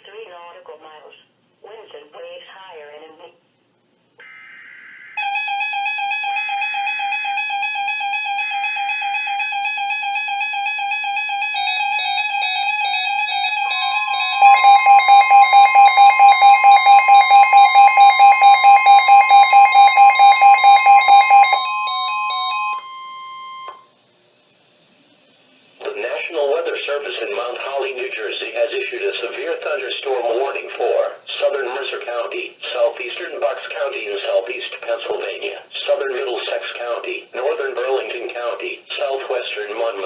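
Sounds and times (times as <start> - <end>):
electronic alarm tone: 4.2 - 23.9.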